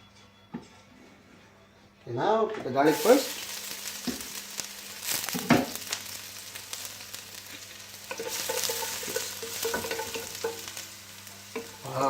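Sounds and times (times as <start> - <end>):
garlic sizzling in oil: 2.8 - 12.0.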